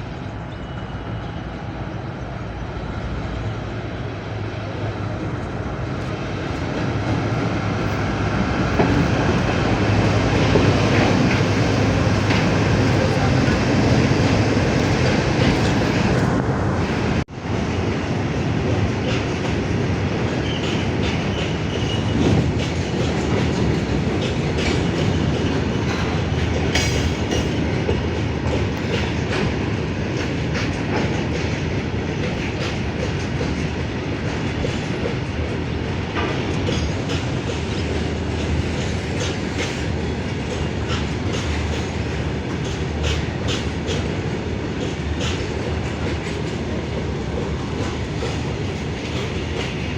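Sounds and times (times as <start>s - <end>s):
freight train rumbling past: 0.0s - 49.9s
wheels clicking over rail joints: 20.2s - 49.9s.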